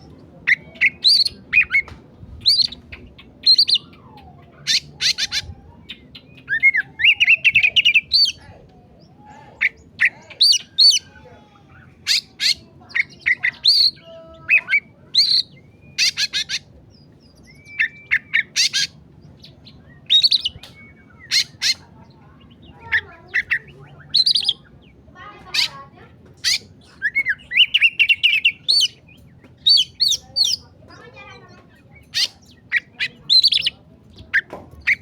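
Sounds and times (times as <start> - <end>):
harsh scratchy bird calls: 0.0 - 35.0
bird singing whistled notes: 3.4 - 4.0, 14.6 - 21.8, 22.6 - 24.7, 26.5 - 30.6.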